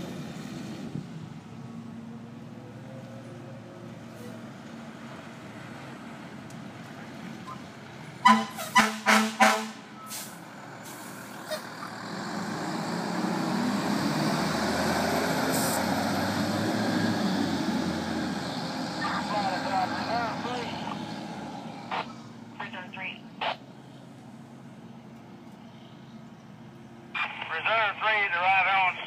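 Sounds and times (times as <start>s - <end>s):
fire truck engine running: 0.0s - 29.0s
fire truck air horn blasts: 8.2s - 10.4s.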